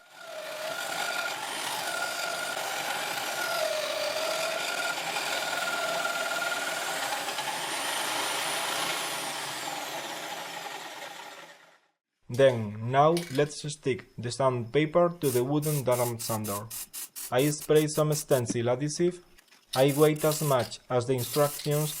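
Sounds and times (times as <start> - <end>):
disc sander grinding wood: 0.0 - 11.8, 19.8 - 22.0
motor whine: 0.0 - 11.8.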